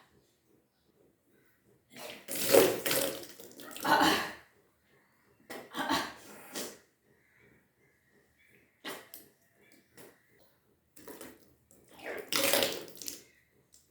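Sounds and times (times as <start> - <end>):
person retching and vomiting: 2.0 - 4.4, 12.0 - 13.0.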